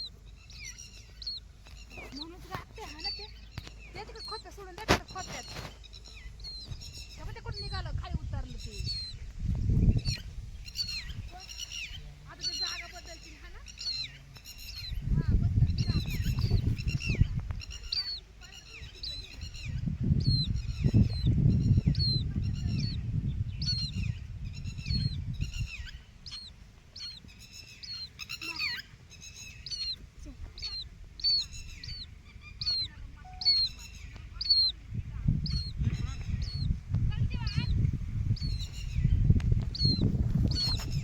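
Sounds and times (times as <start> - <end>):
lapwings calling: 0.0 - 41.0
low microphone rumble: 18.8 - 26.3, 30.4 - 41.0.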